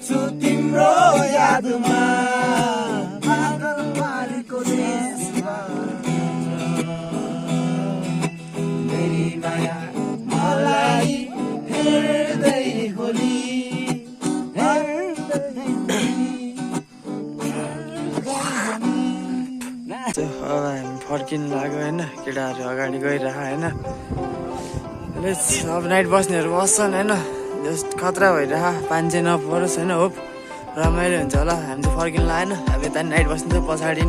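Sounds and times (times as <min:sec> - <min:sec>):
person singing: 0:00.0 - 0:22.2, 0:26.4 - 0:34.0
strummed acoustic guitar: 0:00.0 - 0:34.0.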